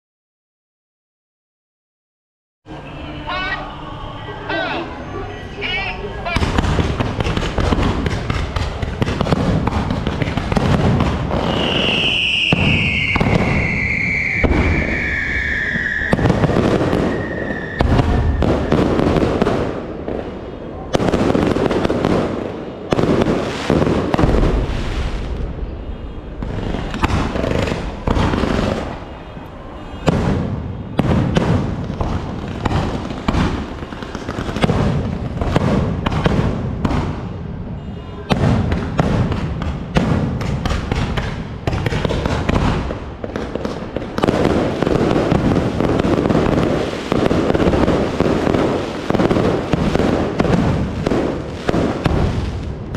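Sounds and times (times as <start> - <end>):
fireworks bangs and crackling: 5.6 - 52.9
firework whistle falling in pitch: 11.4 - 18.8.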